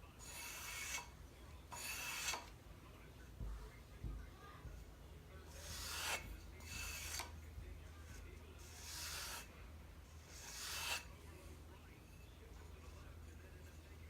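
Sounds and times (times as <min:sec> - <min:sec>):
blade rasping on abrasive: 0:00.2 - 0:02.6, 0:05.5 - 0:07.5, 0:08.6 - 0:11.2.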